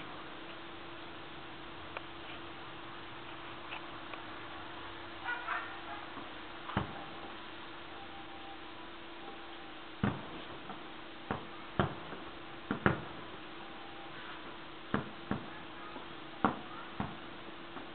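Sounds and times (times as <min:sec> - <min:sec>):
steady low hum: 0:00.0 - 0:17.9
distant fireworks bangs: 0:05.1 - 0:08.4, 0:09.2 - 0:17.9.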